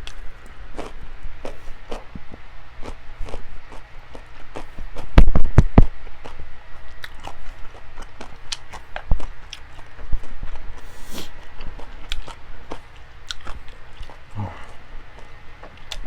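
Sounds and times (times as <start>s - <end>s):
chewing and wet mouth clicks: 6.2s - 10.6s, 11.2s - 14.2s, 15.2s - 16.0s.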